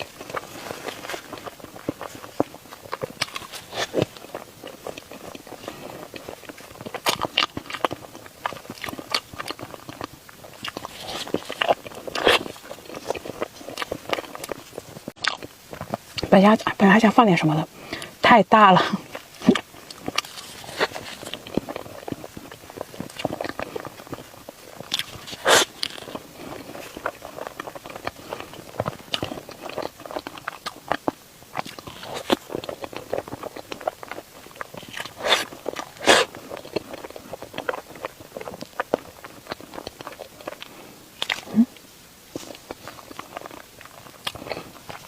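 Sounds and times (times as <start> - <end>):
biting and chewing soft cake: 0.0 - 45.0.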